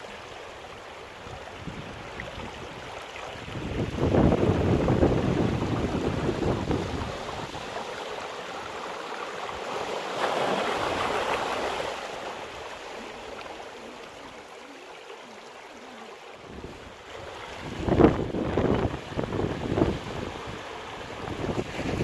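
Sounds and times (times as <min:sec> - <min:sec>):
sea waves breaking on shore: 0:00.0 - 0:22.0.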